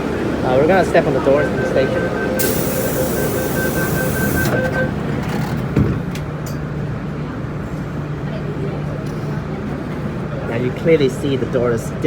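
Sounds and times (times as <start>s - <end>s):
door warning beeping: 0.3s - 5.2s
train doors shutting knock: 1.2s - 6.2s
loud hiss: 2.4s - 4.5s.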